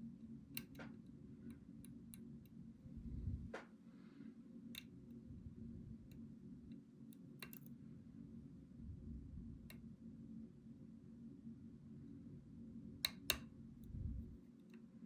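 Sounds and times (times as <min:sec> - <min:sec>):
low steady hum: 0:00.0 - 0:15.0
lock pick metallic clicks: 0:00.6 - 0:00.8, 0:07.1 - 0:07.7, 0:13.0 - 0:13.5.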